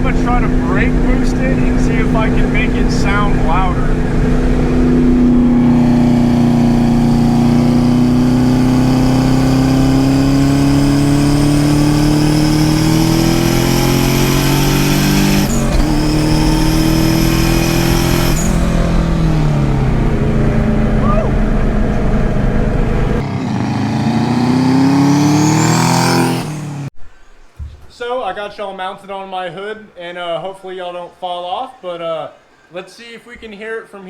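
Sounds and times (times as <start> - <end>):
high turbo whistle: 0.0 - 21.6, 23.4 - 26.6
car engine under load: 0.0 - 27.0.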